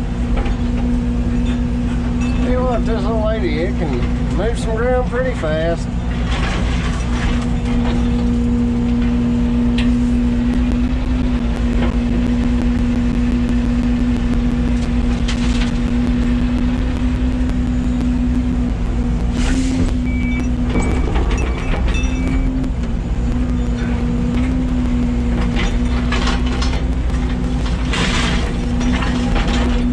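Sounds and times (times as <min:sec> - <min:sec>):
excavator diesel engine running: 0:00.0 - 0:29.9
short high beeps: 0:15.9 - 0:27.8.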